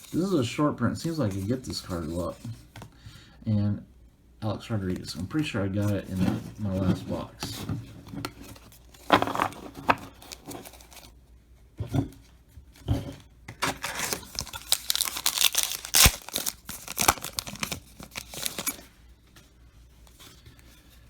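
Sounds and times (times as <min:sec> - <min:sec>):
wrapper tearing and crinkling: 0:13.6 - 0:18.9.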